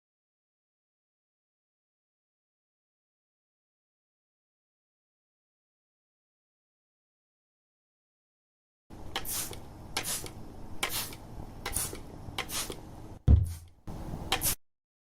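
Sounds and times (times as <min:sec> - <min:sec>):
spray bottle hissing squirts: 0:09.2 - 0:12.8, 0:14.3 - 0:14.6
loud low thump: 0:13.2 - 0:13.7.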